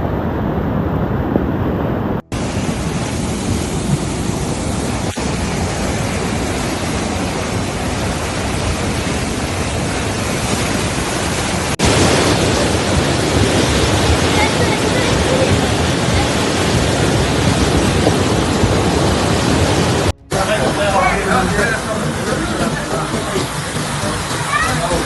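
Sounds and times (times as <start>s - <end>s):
heavy downpour: 2.2s - 25.0s
running floodwater: 2.3s - 25.0s.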